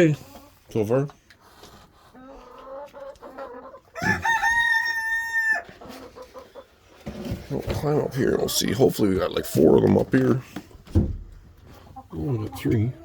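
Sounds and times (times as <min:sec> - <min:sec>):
chickens clucking softly: 0:01.4 - 0:08.2, 0:11.6 - 0:13.0
rooster crowing: 0:04.0 - 0:05.6.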